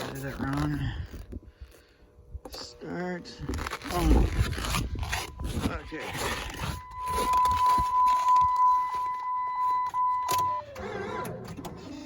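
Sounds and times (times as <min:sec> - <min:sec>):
high electronic beep tone: 0:05.4 - 0:10.8.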